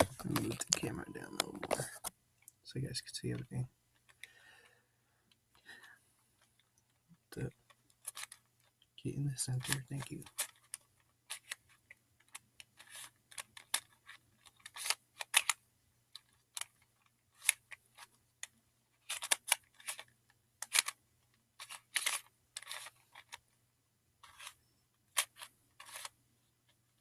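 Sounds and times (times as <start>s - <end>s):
puzzle cube clicks: 9.3s - 21.0s, 21.6s - 23.4s, 24.2s - 26.2s.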